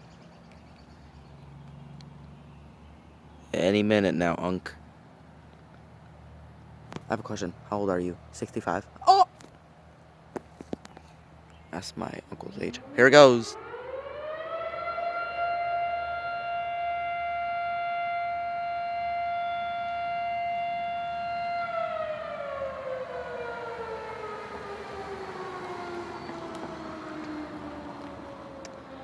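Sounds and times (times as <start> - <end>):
siren rotor winding down: 12.5 - 16.4, 21.3 - 29.0
civil defense siren: 12.5 - 29.0.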